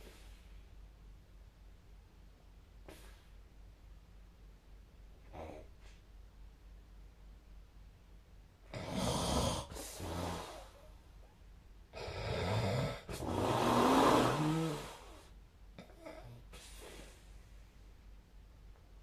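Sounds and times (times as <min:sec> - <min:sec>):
person snoring: 0:08.7 - 0:10.9, 0:12.0 - 0:15.3.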